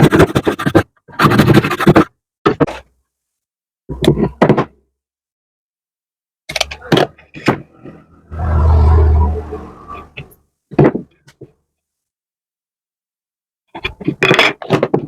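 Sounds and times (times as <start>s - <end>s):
wooden knocks and thunks: 3.9s - 4.8s, 10.7s - 11.6s.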